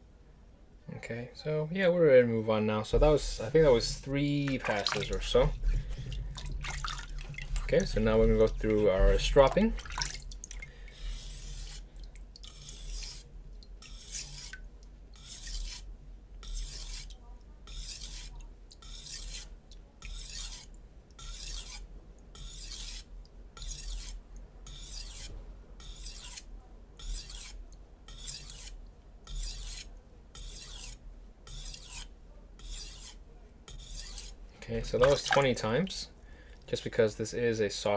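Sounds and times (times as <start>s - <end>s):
knife scraping on whetstone: 3.0s - 6.8s, 11.0s - 14.6s, 15.2s - 17.1s, 17.7s - 35.6s.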